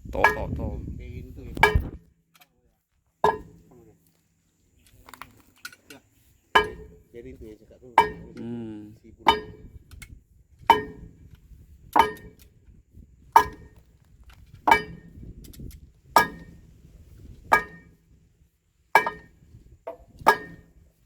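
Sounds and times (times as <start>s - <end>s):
hammer blows on metal: 6.6s - 7.1s, 8.0s - 8.6s, 9.2s - 11.3s.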